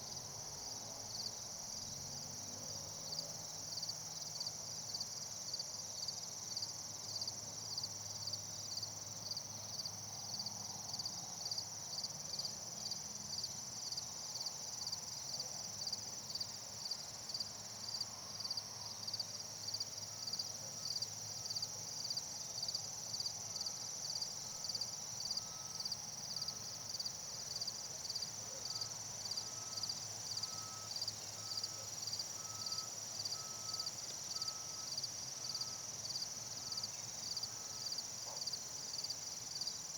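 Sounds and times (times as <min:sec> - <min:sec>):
cricket chirps: 0:00.0 - 0:39.9
insects trilling: 0:17.3 - 0:39.9.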